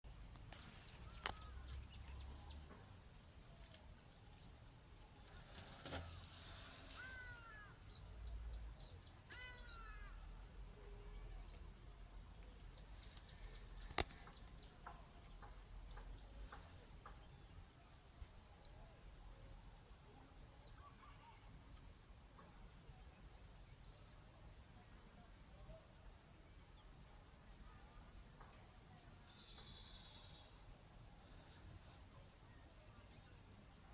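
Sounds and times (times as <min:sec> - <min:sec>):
crickets chirping: 0:00.1 - 0:33.9
bird chirps: 0:00.5 - 0:03.4, 0:06.0 - 0:17.6.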